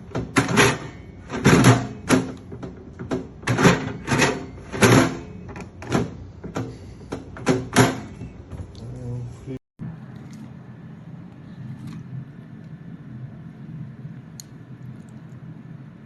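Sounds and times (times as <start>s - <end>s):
drawer knocking and clattering: 0.0s - 8.7s.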